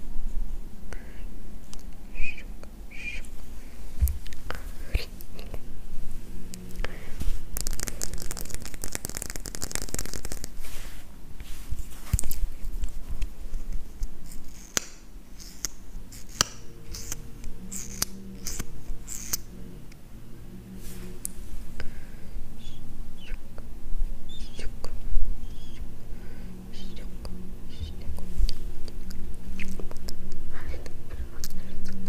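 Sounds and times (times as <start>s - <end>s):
crisp scratching and rustling: 6.8s - 14.8s.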